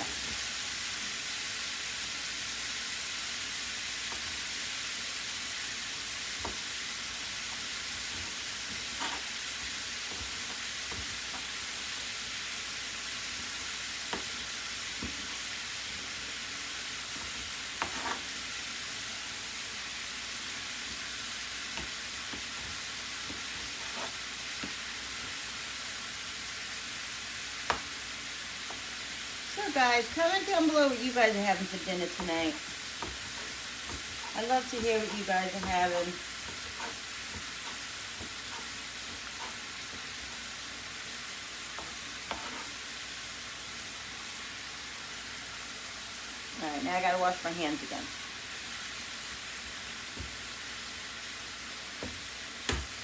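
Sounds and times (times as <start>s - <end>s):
chicken sizzling in a pan: 0.0s - 53.0s.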